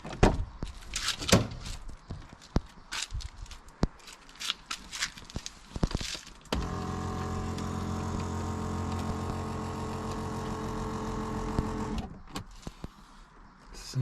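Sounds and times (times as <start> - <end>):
electric motor humming: 6.6 - 12.0.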